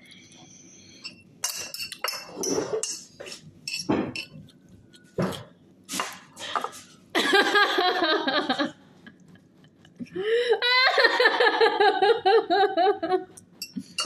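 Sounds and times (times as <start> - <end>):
cutlery clinking on plates: 1.0 - 4.5, 13.6 - 14.0.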